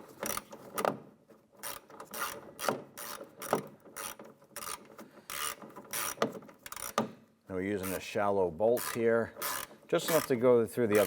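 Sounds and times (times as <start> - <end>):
ratchet wrench clicking: 1.6 - 7.0, 8.8 - 10.3.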